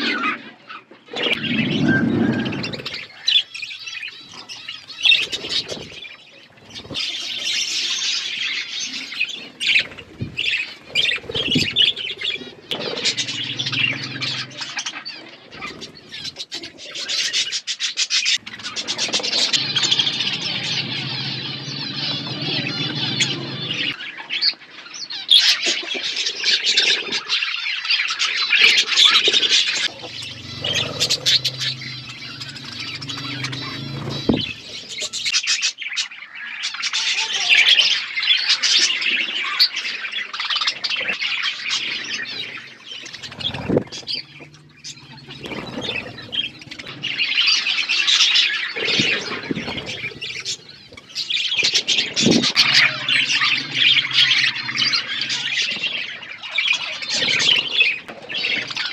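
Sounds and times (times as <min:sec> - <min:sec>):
budgerigars chattering: 0:01.2 - 0:24.0, 0:29.8 - 0:35.6, 0:41.0 - 0:58.9
bird squawks: 0:01.3 - 0:23.8, 0:29.8 - 0:35.6, 0:41.7 - 0:47.5, 0:48.3 - 0:58.0.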